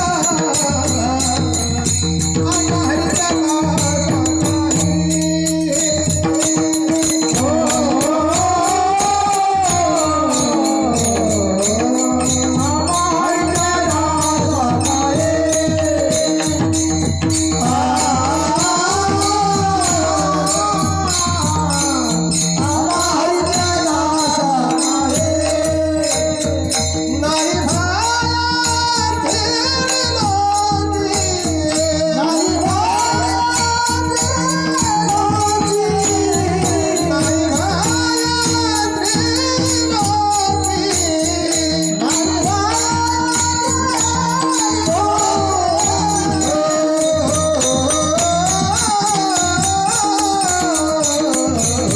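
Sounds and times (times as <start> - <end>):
jingling percussion: 0.0 - 51.9
person singing devotional melody: 0.0 - 51.9.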